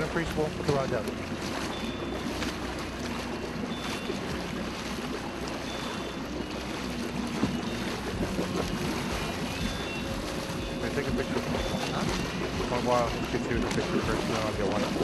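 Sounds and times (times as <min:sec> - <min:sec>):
boat engine running: 0:00.0 - 0:15.0
water washing around hull: 0:00.0 - 0:15.0.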